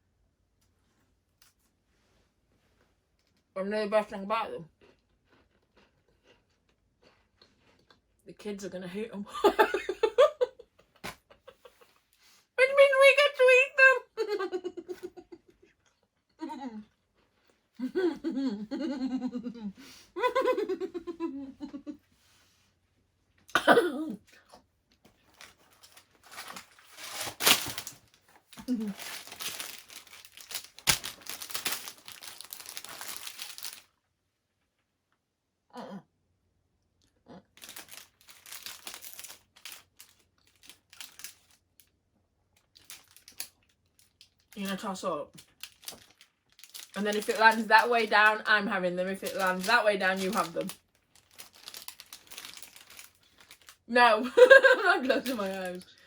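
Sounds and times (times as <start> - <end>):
person laughing: 9.4 - 10.6, 14.0 - 15.6, 17.8 - 22.0, 54.2 - 55.5
rustling: 25.1 - 33.9, 49.1 - 53.8
plastic packaging crinkling: 25.2 - 33.9, 37.6 - 41.9, 42.6 - 44.8, 45.4 - 55.9.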